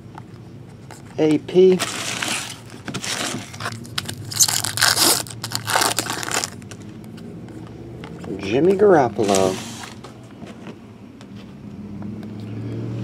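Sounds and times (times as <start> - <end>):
wrapper tearing and crinkling: 1.8 - 6.8.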